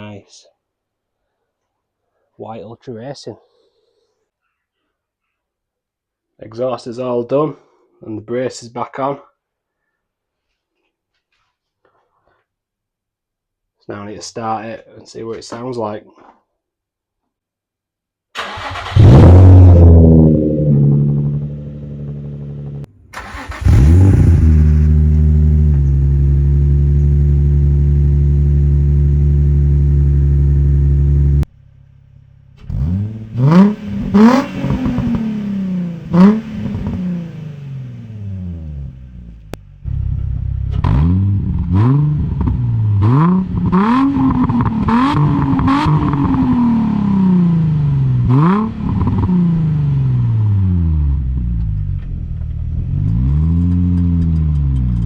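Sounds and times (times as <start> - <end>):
car engine idling and revving: 18.5 - 55.0.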